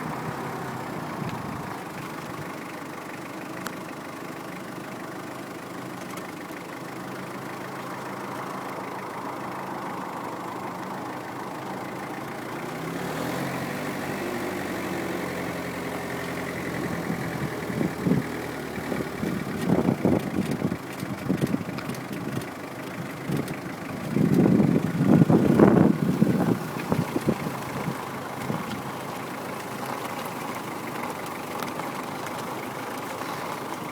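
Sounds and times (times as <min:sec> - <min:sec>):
brake pedal noise: 0:00.0 - 0:02.7, 0:14.8 - 0:33.9
car engine idling: 0:00.0 - 0:33.9.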